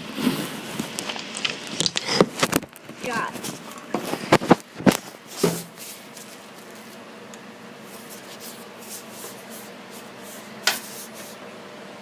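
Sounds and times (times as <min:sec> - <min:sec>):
low steady hum: 0:00.0 - 0:12.0
soft rubbing and rustling: 0:03.0 - 0:07.0, 0:07.8 - 0:11.4.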